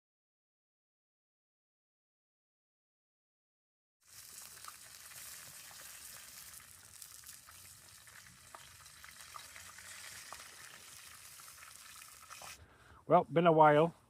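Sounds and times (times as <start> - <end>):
burgers sizzling in a pan: 4.0 - 12.6.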